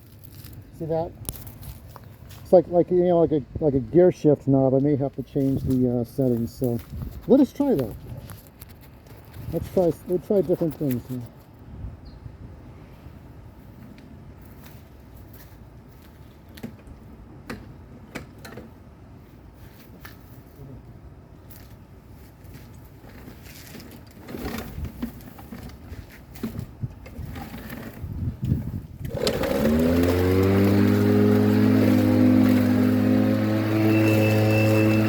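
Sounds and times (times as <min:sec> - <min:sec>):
lawn mower engine running: 0:24.2 - 0:25.6, 0:27.1 - 0:28.0, 0:29.0 - 0:35.0
clicks of mower controls: 0:29.0 - 0:35.0.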